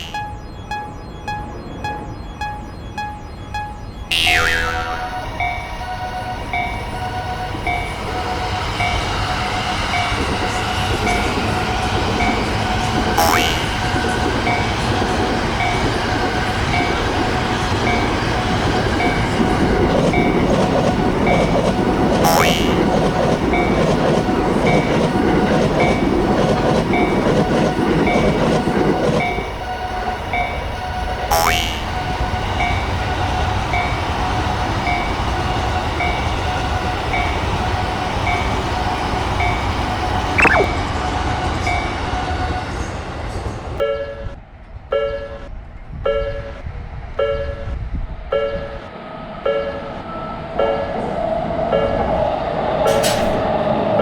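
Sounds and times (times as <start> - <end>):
level-crossing warning bell: 0.0 - 40.9, 43.8 - 45.5
passing train: 0.0 - 54.0
brief sliding tone: 40.4 - 40.7.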